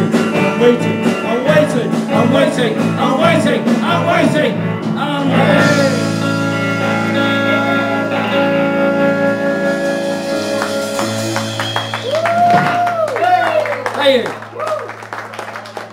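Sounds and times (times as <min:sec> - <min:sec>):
guitar chords ringing: 0:00.0 - 0:12.2
drums: 0:00.0 - 0:15.9.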